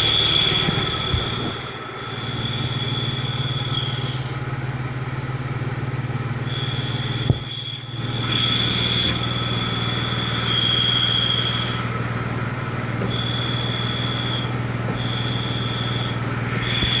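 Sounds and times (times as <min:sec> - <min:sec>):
car engine running: 0:00.0 - 0:17.0
high-pitched chirping squeal: 0:06.5 - 0:12.0, 0:13.1 - 0:17.0.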